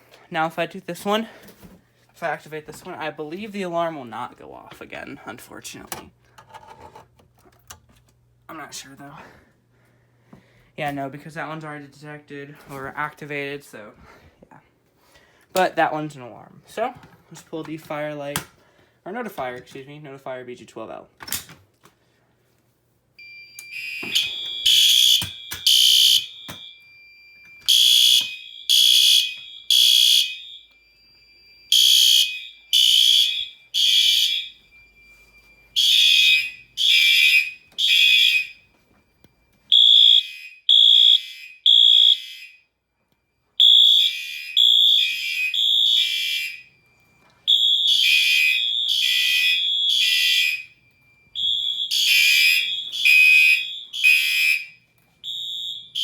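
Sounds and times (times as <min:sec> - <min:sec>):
fire alarm horns blasting: 0:23.2 - 0:56.0.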